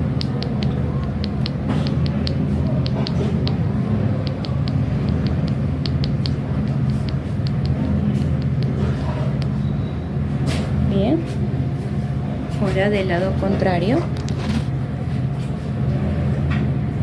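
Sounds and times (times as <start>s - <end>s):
steady low rumble: 0.0s - 15.1s
finger tapping on chest: 0.2s - 3.6s, 4.2s - 8.8s.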